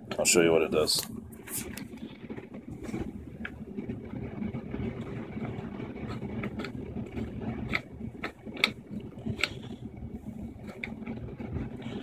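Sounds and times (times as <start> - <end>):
air compressor running: 0.0 - 12.0
sharp clicks and ticks: 3.3 - 11.9.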